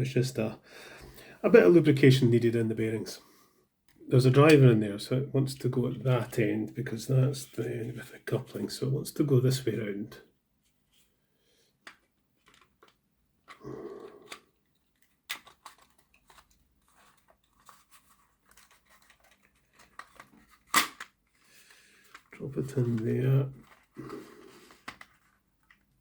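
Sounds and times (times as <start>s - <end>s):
plastic parts clicking and rustling: 11.8s - 24.0s, 24.6s - 26.0s.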